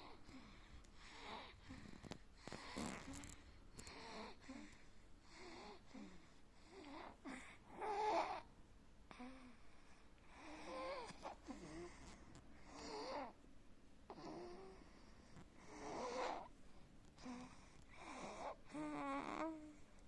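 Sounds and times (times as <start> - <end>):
person snoring: 2.6 - 4.4.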